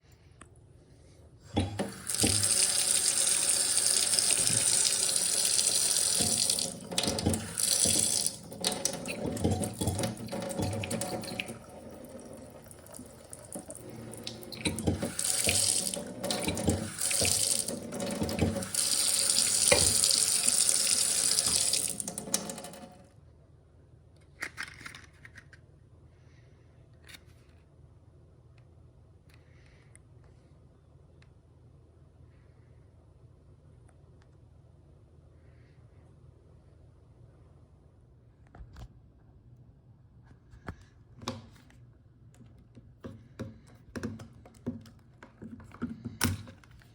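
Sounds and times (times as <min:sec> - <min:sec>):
faucet running into sink: 0:01.6 - 0:23.0.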